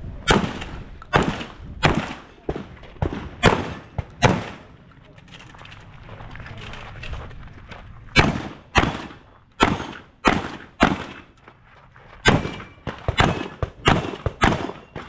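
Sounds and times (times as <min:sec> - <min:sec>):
shotgun shots: 0:00.2 - 0:04.7, 0:08.2 - 0:11.4, 0:12.2 - 0:15.0.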